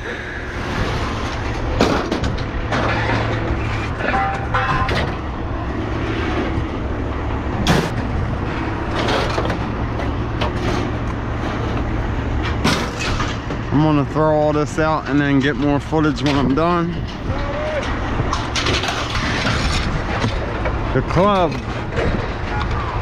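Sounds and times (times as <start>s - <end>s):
low engine hum: 0.0s - 23.0s
scrap metal clanking: 0.8s - 5.3s, 8.9s - 11.8s, 17.8s - 20.6s.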